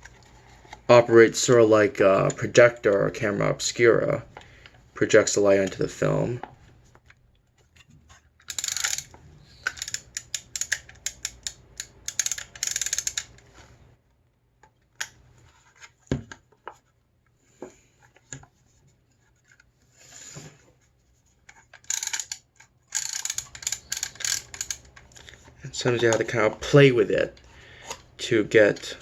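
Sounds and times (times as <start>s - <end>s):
film rustling against camera: 4.3s - 13.9s, 20.7s - 29.0s.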